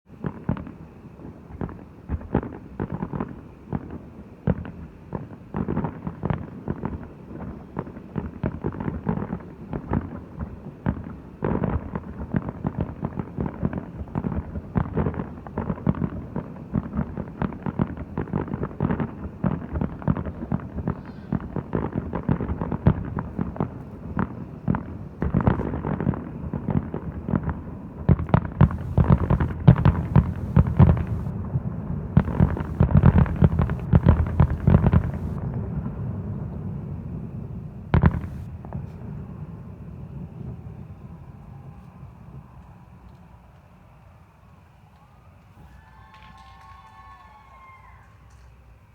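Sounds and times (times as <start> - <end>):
fireworks bangs: 28.1 - 35.7, 37.9 - 38.8.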